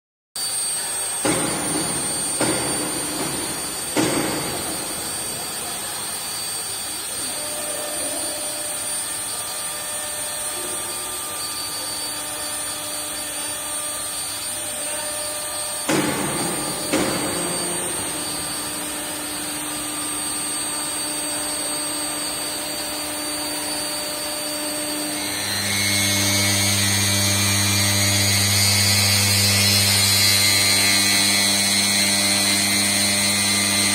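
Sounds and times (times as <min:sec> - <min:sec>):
cnc router whine: 0:00.4 - 0:33.9
sharp knocks: 0:01.2 - 0:05.0, 0:15.9 - 0:18.2.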